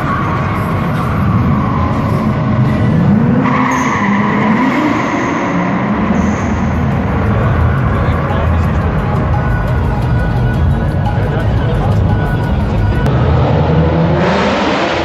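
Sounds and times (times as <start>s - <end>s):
tyres screeching: 0.0s - 8.3s
car engine revving: 0.0s - 15.0s.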